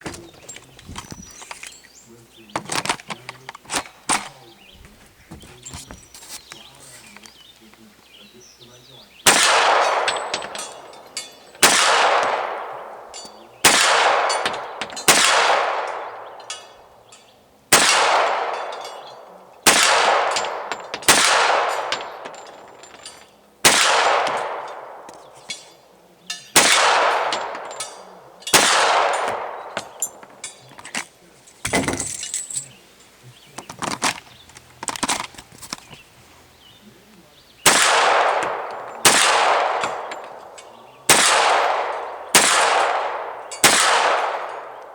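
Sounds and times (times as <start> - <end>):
gunshots: 9.2 - 16.9, 17.7 - 31.1, 37.6 - 44.9
steel plate ringing: 9.3 - 23.4.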